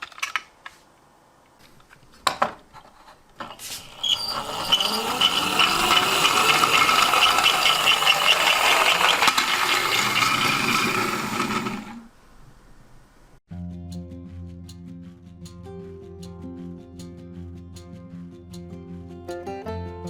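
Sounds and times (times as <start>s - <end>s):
toy car rattling along track: 2.9s - 12.1s.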